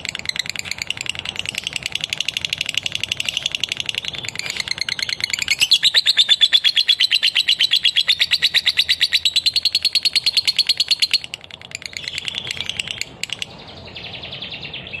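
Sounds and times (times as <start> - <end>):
bird soft chatter: 0.0 - 14.2
bird shrill trill: 0.0 - 15.0.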